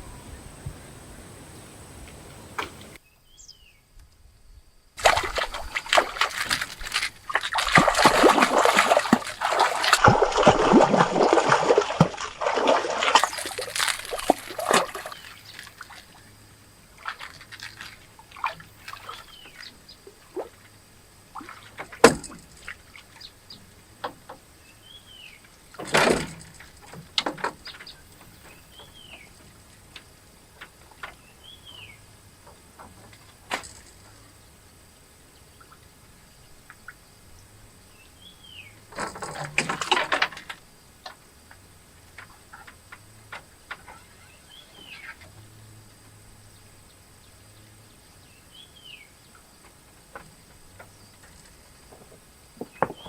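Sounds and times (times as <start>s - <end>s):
water splashing and sloshing: 5.0s - 24.4s, 25.5s - 31.3s, 38.8s - 46.3s, 49.3s - 53.0s.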